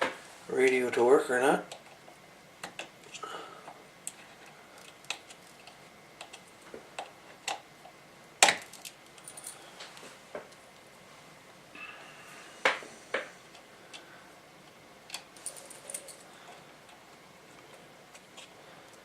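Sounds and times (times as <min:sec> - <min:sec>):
metal parts clicking and clinking: 0:08.6 - 0:09.6, 0:15.1 - 0:16.6.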